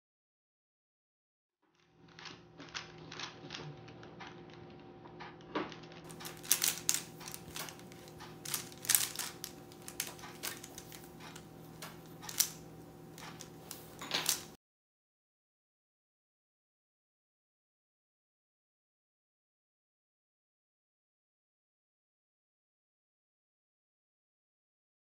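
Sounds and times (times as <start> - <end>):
puzzle cube plastic clicks: 2.1 - 14.6.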